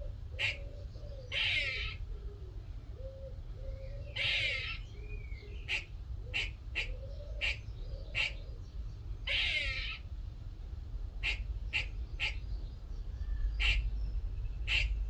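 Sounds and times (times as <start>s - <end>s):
squirrel rasping call: 0.0s - 2.1s, 4.1s - 8.5s, 9.3s - 10.1s, 11.2s - 12.4s, 13.2s - 14.0s, 14.6s - 15.0s
squirrel short sharp barks: 14.7s - 15.0s.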